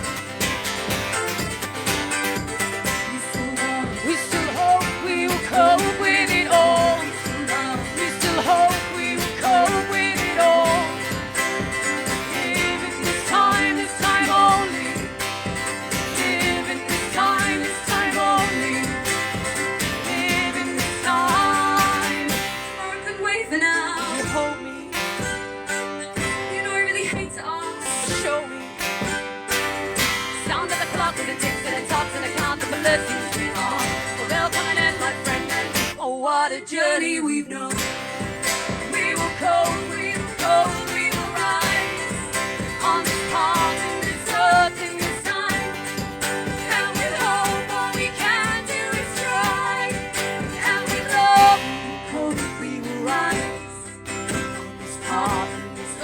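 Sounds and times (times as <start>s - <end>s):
acoustic guitar: 0.0s - 56.0s
person singing: 0.0s - 56.0s.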